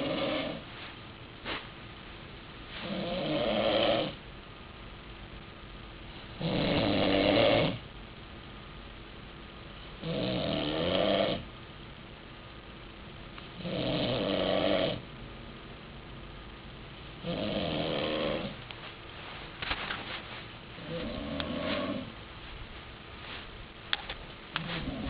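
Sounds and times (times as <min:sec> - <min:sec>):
man snoring loudly: 0:00.0 - 0:00.6, 0:02.8 - 0:04.2, 0:06.4 - 0:07.8, 0:10.0 - 0:11.4, 0:13.6 - 0:15.0, 0:17.2 - 0:18.6, 0:20.8 - 0:22.1.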